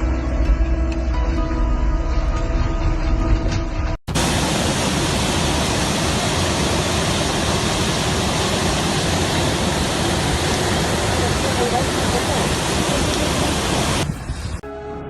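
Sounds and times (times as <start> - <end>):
music: 0.0 - 4.0, 14.6 - 15.0
steady rushing noise: 4.1 - 14.6.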